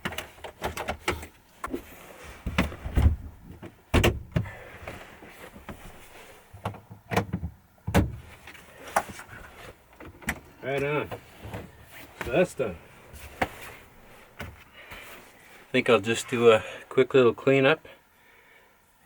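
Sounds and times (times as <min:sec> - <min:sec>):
clicks and knocks of handling: 0:00.0 - 0:01.8
heavy thuds: 0:01.7 - 0:07.0.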